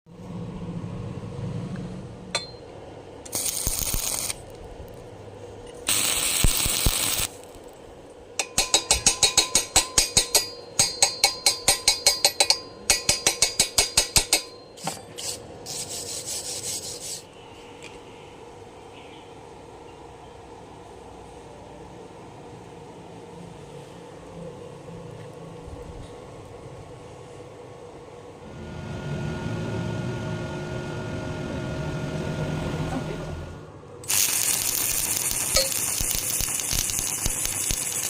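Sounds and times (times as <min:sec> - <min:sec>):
steady hissing: 0:05.9 - 0:07.8, 0:34.0 - 0:38.0.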